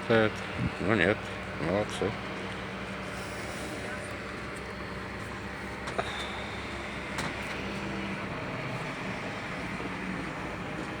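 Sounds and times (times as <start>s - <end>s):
road-paving machinery engine drone: 0.0s - 11.0s.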